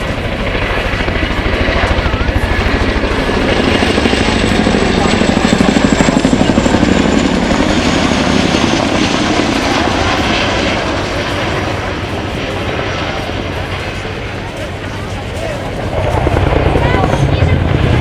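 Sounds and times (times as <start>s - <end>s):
helicopter rotors beating: 0.0s - 18.0s
high turbine whine: 0.0s - 18.0s.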